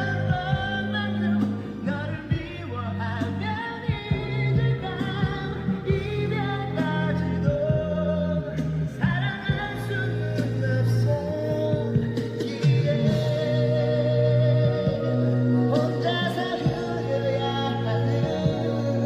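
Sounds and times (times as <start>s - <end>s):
pop song with singer and band: 0.0s - 19.0s.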